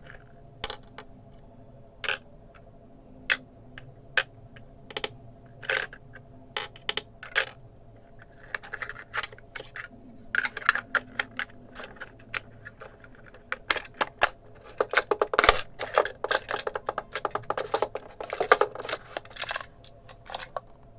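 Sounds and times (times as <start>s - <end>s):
small toy pieces clicking: 8.4s - 20.7s.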